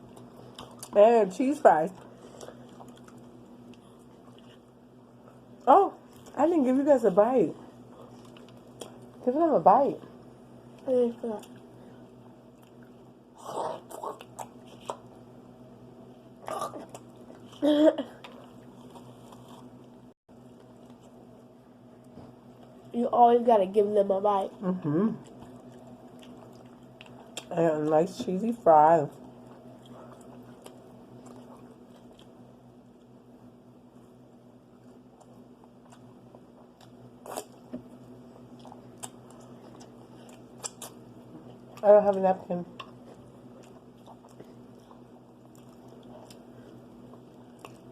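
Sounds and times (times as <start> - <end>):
faint steady hum: 0.0 - 47.9
person chewing fried chicken: 2.0 - 5.4, 11.4 - 15.3, 18.2 - 21.2, 25.2 - 27.5, 29.4 - 33.2, 34.9 - 41.8, 42.7 - 47.9.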